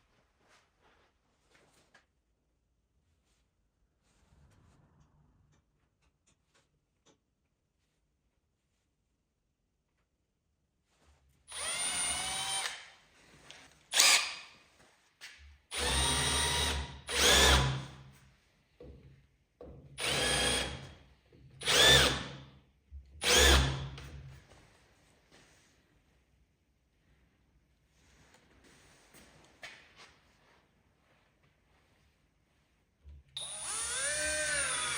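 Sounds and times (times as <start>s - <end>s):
power drill whining in bursts: 11.5s - 12.9s, 13.9s - 14.5s, 15.7s - 18.0s, 20.0s - 20.9s, 21.6s - 22.4s, 23.2s - 24.0s, 33.4s - 34.9s.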